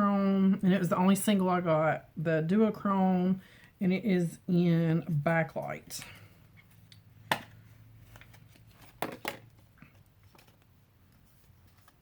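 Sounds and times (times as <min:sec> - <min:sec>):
light rustling of packaging: 0:07.6 - 0:12.0.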